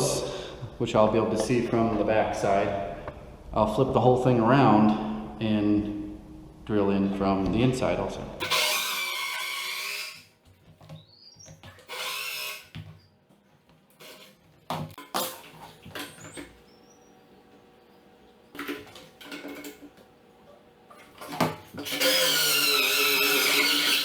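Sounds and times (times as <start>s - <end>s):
drill hole saw cutting wood: 8.4s - 10.3s, 11.9s - 12.8s, 21.8s - 24.0s.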